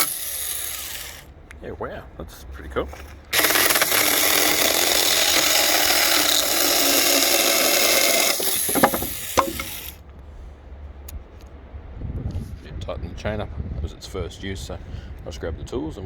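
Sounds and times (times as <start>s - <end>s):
chainsaw cutting wood: 0.0s - 1.3s, 2.9s - 10.0s.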